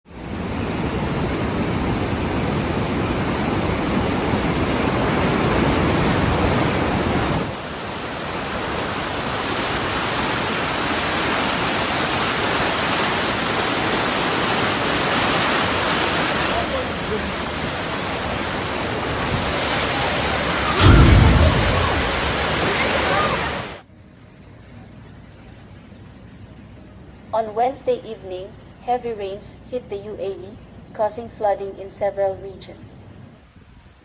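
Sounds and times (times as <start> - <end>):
heavy rain: 0.1 - 23.9
running floodwater: 0.1 - 28.4.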